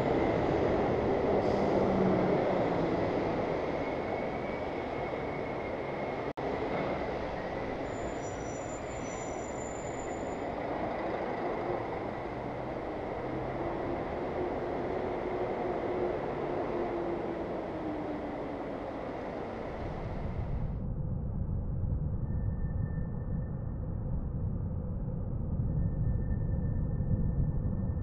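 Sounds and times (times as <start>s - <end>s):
road traffic rumble: 0.0s - 20.7s
faint high whine: 2.4s - 20.7s.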